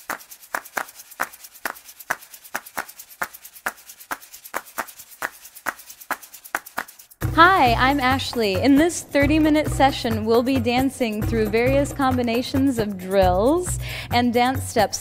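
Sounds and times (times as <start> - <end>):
crisp percussive ticks: 0.0 - 9.8.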